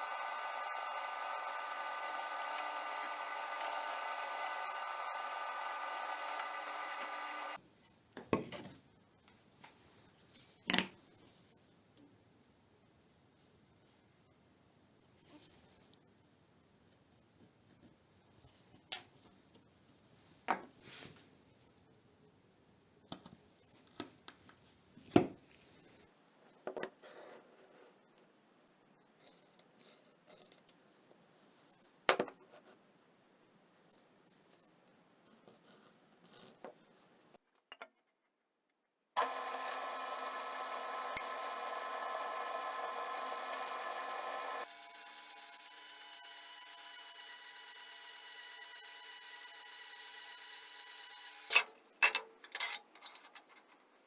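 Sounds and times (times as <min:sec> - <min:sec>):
power tool motor whining: 0:00.0 - 0:07.6, 0:39.2 - 0:51.7.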